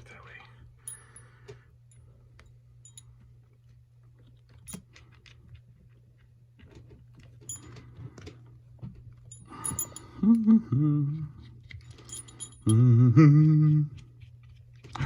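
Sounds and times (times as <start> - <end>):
sharp metal clinks: 2.8 - 3.1, 9.3 - 10.2, 11.9 - 12.8.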